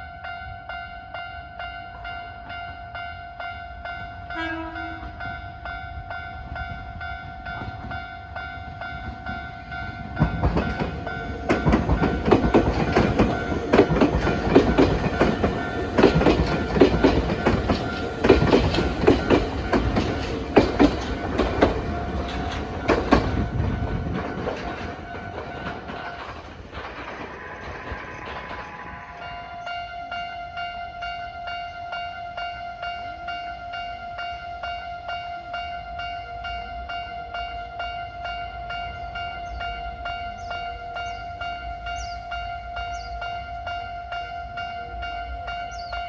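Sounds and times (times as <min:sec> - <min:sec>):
level crossing alarm ringing: 0:00.0 - 0:26.4
train wheels clacking on rails: 0:06.1 - 0:30.7.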